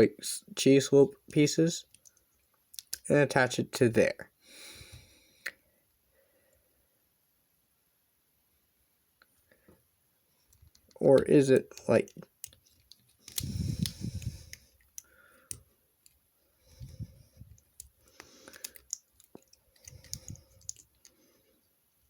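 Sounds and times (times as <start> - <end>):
plastic bricks clicking and rattling: 17.4 - 21.2.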